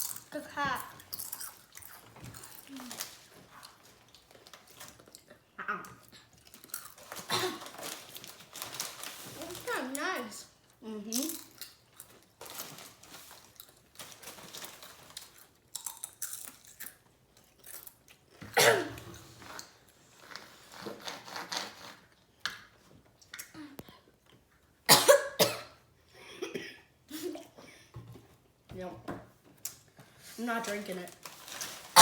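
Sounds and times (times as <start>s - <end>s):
child coughing: 7.2s - 7.8s, 18.6s - 19.1s, 24.9s - 25.8s.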